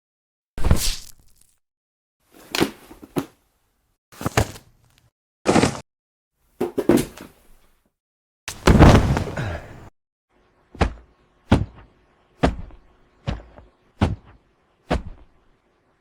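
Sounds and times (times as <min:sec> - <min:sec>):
heavy body-fall thuds: 0:08.5 - 0:09.8.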